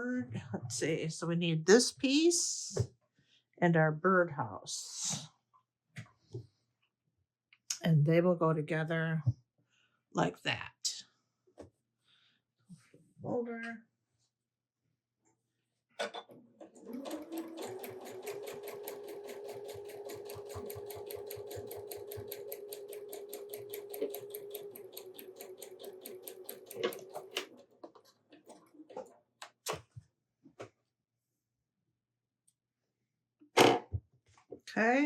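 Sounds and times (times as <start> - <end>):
sewing machine stitching: 16.6 - 29.1
sewing machine clicks: 16.7 - 27.8.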